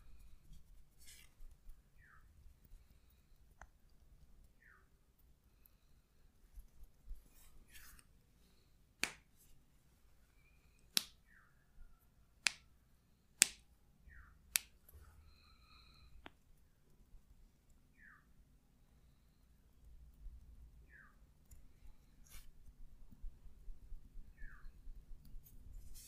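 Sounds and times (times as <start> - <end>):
sharp snaps: 9.0 - 9.3, 10.7 - 11.4, 12.4 - 12.7, 13.4 - 14.9.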